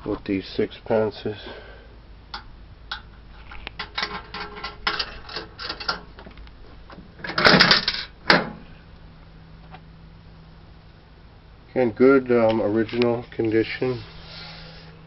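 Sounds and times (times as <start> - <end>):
vending machine clatter: 3.8 - 6.1, 7.2 - 8.6.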